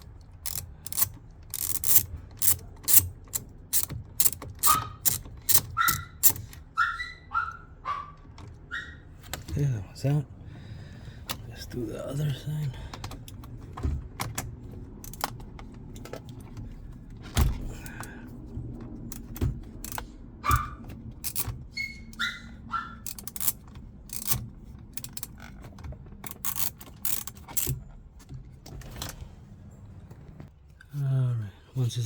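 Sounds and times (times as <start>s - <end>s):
socket wrench clicking and rattling: 0.0s - 6.7s, 15.0s - 15.5s, 19.1s - 27.8s
short squeaks: 3.8s - 9.4s, 20.4s - 23.5s.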